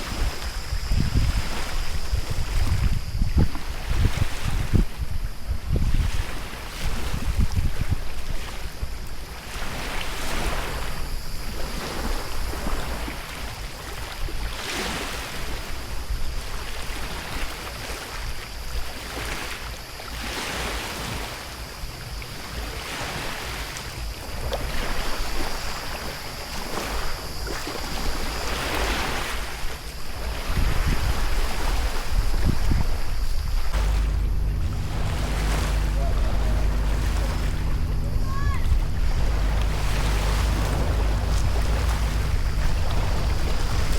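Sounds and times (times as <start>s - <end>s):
wind rumble on microphone: 0.0s - 43.9s
paddle swishing through water: 20.1s - 43.9s.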